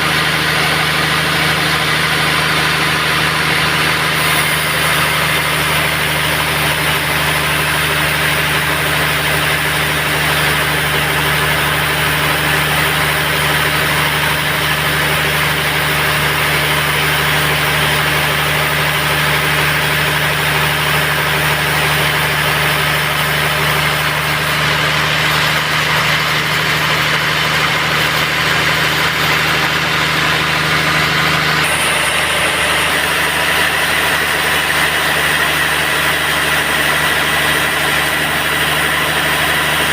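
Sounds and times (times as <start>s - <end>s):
sawmill motor hum: 0.0s - 39.9s.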